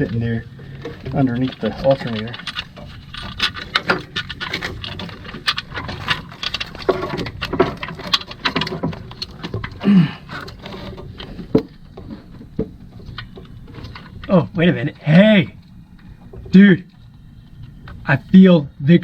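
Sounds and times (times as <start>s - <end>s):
metallic clinks and scrapes of tools: 0.0s - 14.2s.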